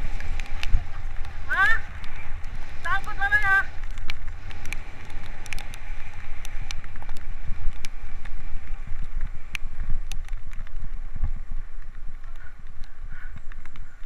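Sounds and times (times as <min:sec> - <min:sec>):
bike clicks and rattles: 0:00.0 - 0:02.6, 0:03.8 - 0:14.0
bike tyre noise: 0:00.0 - 0:14.0
wind buffeting microphone: 0:00.0 - 0:14.0.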